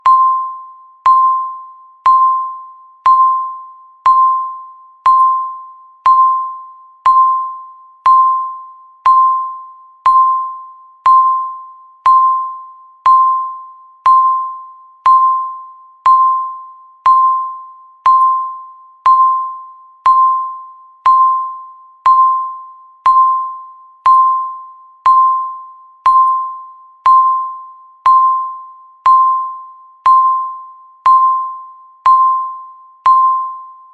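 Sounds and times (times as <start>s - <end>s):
countdown timer beeping: 0.0s - 33.9s.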